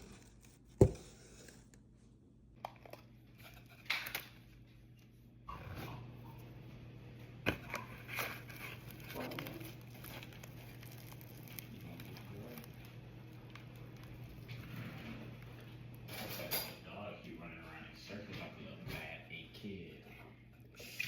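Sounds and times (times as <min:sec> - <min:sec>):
packaging crinkling and rustling: 0:07.6 - 0:15.7.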